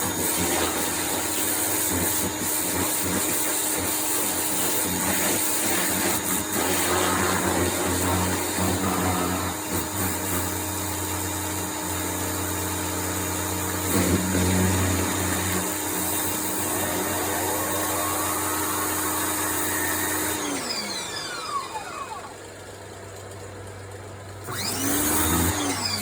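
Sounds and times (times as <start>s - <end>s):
water spraying hiss: 0.0s - 11.0s, 13.9s - 20.8s
power washer motor hum: 0.0s - 26.0s.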